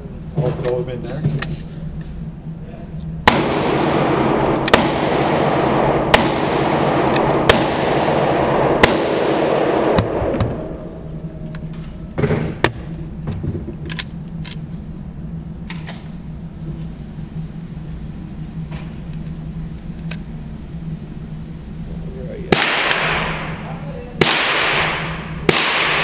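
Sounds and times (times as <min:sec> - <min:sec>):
handgun shots: 0:03.3 - 0:05.5, 0:06.1 - 0:10.6, 0:22.5 - 0:23.6, 0:24.2 - 0:26.0
loud rushing noise: 0:03.3 - 0:13.0.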